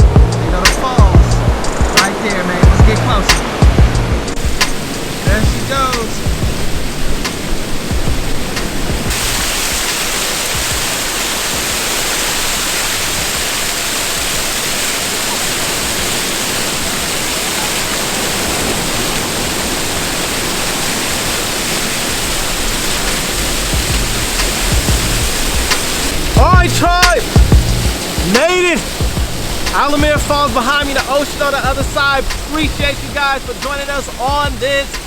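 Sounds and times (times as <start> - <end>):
waterfall rushing: 0.0 - 35.0.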